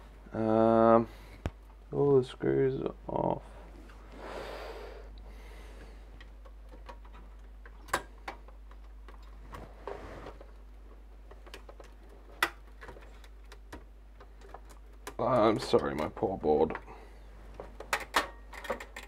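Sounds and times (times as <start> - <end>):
computer hardware being handled: 6.2 - 16.9, 17.5 - 19.0.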